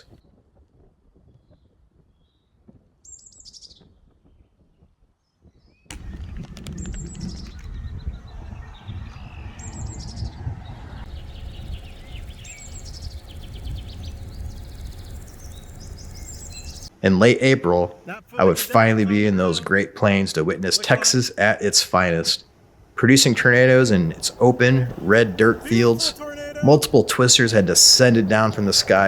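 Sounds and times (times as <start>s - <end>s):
songbird singing: 5.5s - 17.0s, 23.2s - 29.0s.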